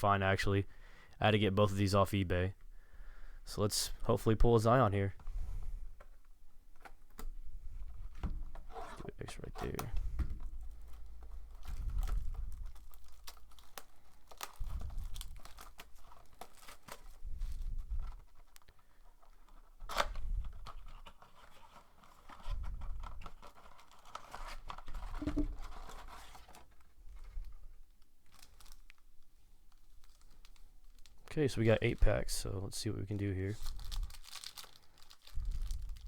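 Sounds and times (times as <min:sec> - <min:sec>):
shrink wrap tearing and crinkling: 0:09.0 - 0:09.8, 0:10.4 - 0:36.0.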